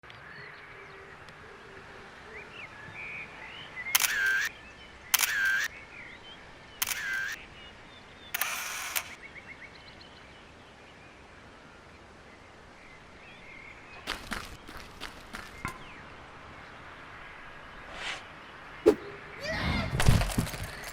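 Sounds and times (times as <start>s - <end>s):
faint birds chirping: 0.1s - 19.8s
camera shutter clicking: 4.0s - 4.5s, 5.2s - 5.7s, 6.8s - 7.4s, 8.4s - 9.2s.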